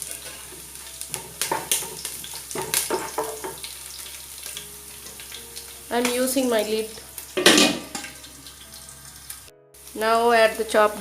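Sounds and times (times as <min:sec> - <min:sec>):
spoon stirring and knocking pan: 0:00.0 - 0:06.4, 0:07.4 - 0:08.3
garlic sizzling in oil: 0:00.0 - 0:11.0.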